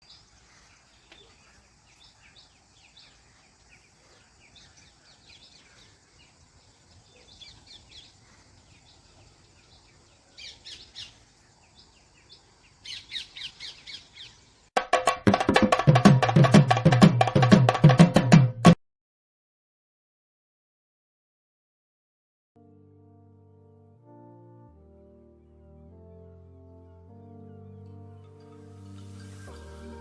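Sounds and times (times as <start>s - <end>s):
birds chirping: 0.0s - 14.7s.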